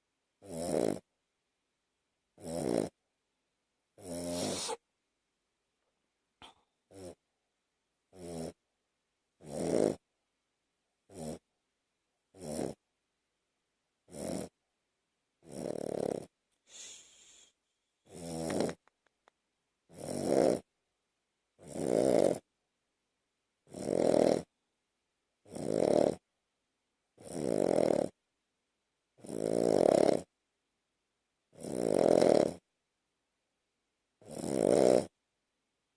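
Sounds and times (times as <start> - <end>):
dog snoring: 0.4 - 1.1, 2.4 - 3.0, 4.0 - 4.8, 6.4 - 7.2, 8.1 - 8.6, 9.4 - 10.0, 11.1 - 11.5, 12.3 - 12.8, 14.0 - 14.6, 15.4 - 18.9, 19.9 - 20.7, 21.6 - 22.5, 23.6 - 24.5, 25.4 - 26.2, 27.2 - 28.2, 29.2 - 30.3, 31.5 - 32.7, 34.2 - 35.2.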